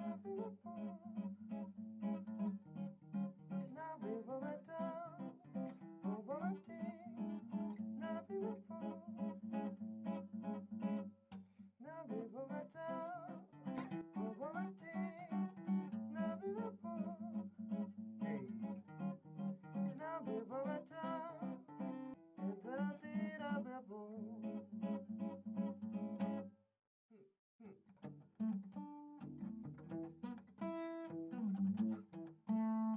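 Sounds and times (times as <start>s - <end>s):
man singing: 0.0s - 1.2s, 3.6s - 9.4s, 11.8s - 17.4s, 19.9s - 24.6s
acoustic guitar strumming: 0.0s - 11.2s, 12.1s - 26.4s, 28.0s - 32.9s.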